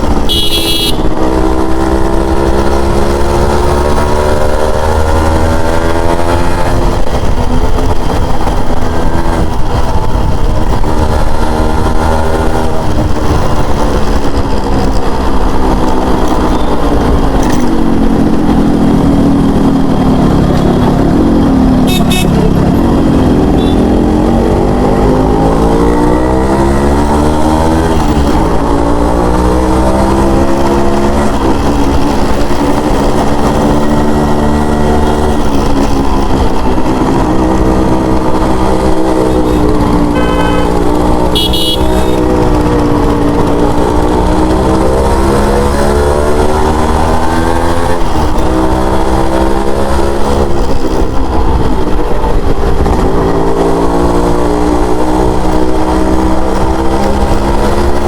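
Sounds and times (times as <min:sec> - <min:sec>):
motorcycle engine revving: 0:00.0 - 0:58.0
vehicle horn: 0:00.2 - 0:01.2, 0:21.8 - 0:22.6, 0:23.6 - 0:23.8, 0:40.0 - 0:42.3.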